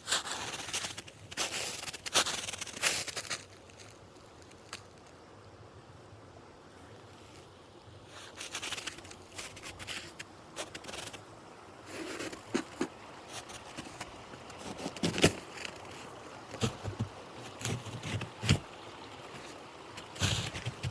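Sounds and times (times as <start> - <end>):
rustling and scraping: 0.1 - 5.1, 8.2 - 11.2, 11.9 - 18.6, 19.3 - 20.9.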